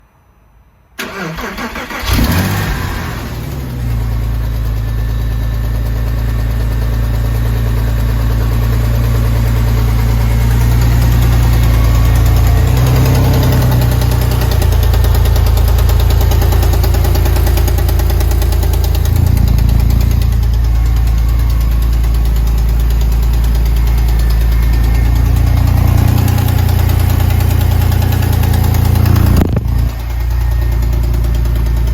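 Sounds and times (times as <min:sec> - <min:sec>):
car engine starter cranking: 0:01.0 - 0:04.1
car engine idling: 0:01.0 - 0:31.9.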